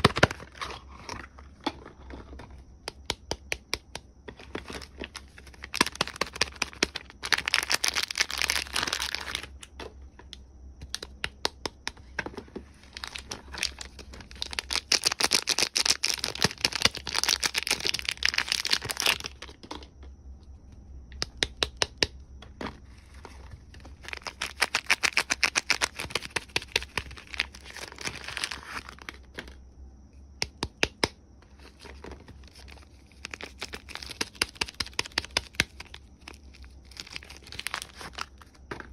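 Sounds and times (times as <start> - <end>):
wrapping crinkling and tearing: 4.6 - 9.5, 12.9 - 19.4, 24.0 - 29.2, 32.4 - 38.5.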